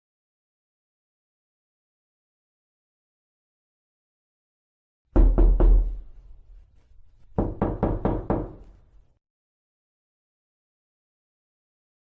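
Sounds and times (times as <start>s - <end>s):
knocking on a door: 5.2s - 6.1s, 7.4s - 8.7s.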